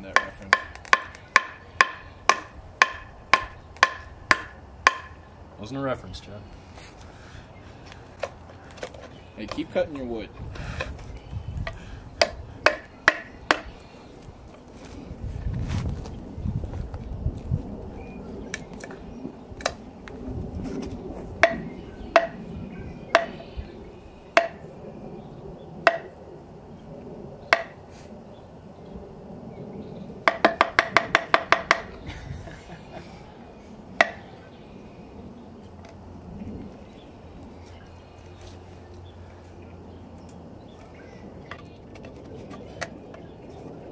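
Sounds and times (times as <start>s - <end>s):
knife chopping wood: 0.1s - 5.1s, 11.6s - 13.7s, 25.9s - 26.1s.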